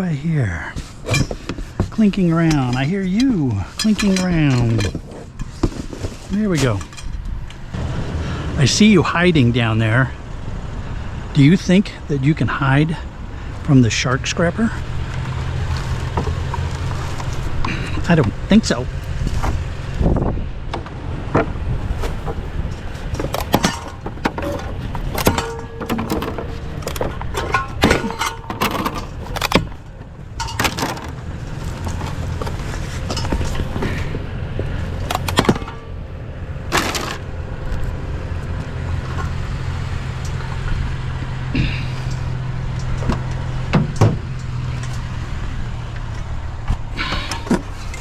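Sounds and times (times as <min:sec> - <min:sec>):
truck engine idling: 0:00.0 - 0:48.0
metal and plastic clanking: 0:00.7 - 0:07.7, 0:20.7 - 0:36.0, 0:36.7 - 0:37.9, 0:41.6 - 0:45.1, 0:46.0 - 0:48.0.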